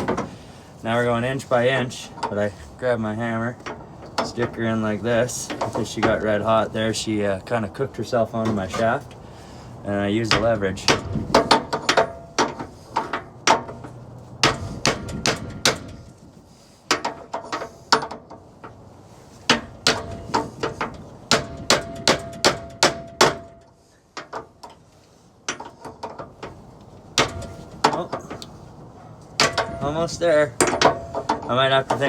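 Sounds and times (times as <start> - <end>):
hammer striking metal: 14.4 - 16.0, 21.3 - 23.7, 29.4 - 30.0.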